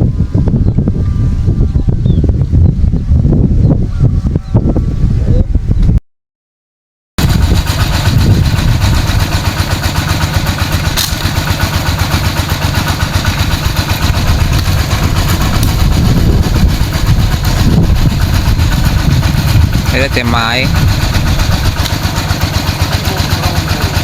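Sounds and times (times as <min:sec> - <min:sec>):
small water pump engine chugging: 0:07.2 - 0:24.0.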